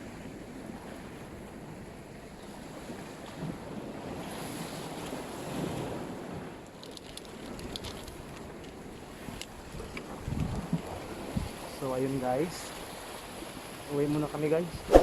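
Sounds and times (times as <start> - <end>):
sea waves washing: 0.0 - 15.0
wind buffeting microphone: 7.4 - 15.0.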